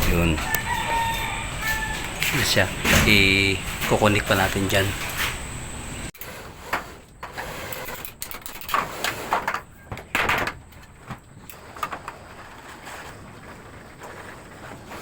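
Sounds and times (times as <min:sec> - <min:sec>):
objects scraping: 0:00.0 - 0:15.0
objects knocking: 0:08.2 - 0:15.0.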